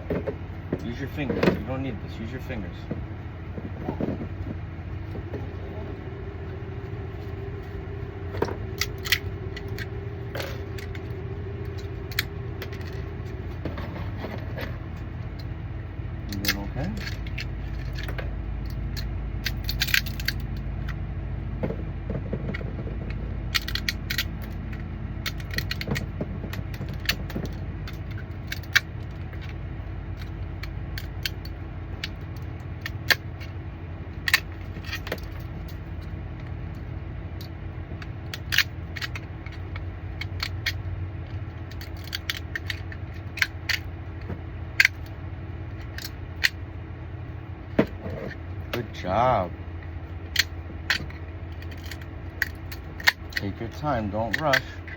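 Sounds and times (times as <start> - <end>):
steady low hum: 0.0 - 54.9
plastic parts clicking and rattling: 0.1 - 15.5, 16.3 - 21.0, 21.6 - 33.6, 34.2 - 46.7, 50.1 - 54.9
sharp plastic snaps: 16.3 - 21.0, 22.5 - 33.6, 36.7 - 46.6, 50.3 - 54.9.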